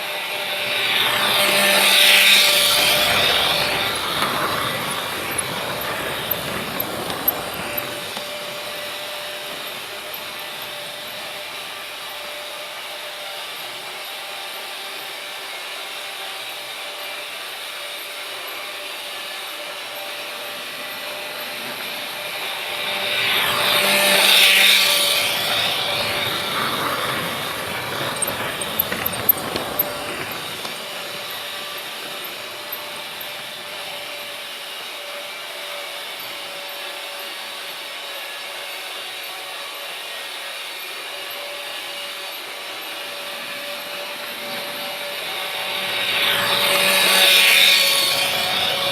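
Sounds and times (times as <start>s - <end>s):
sharp train clacks: 0.0s - 12.2s, 20.9s - 34.4s
freight train rumbling: 0.4s - 11.8s, 21.0s - 34.1s.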